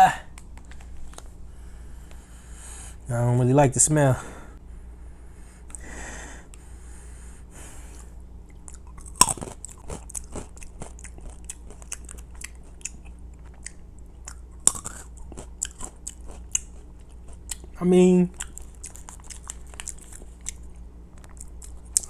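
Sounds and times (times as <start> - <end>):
peanuts crunching while chewed: 8.0 - 22.0.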